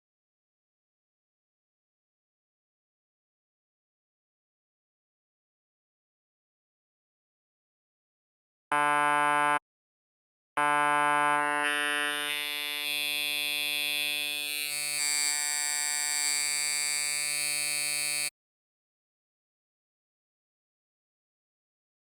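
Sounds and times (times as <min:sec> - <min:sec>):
buzzy synthesizer note: 0:08.7 - 0:09.6.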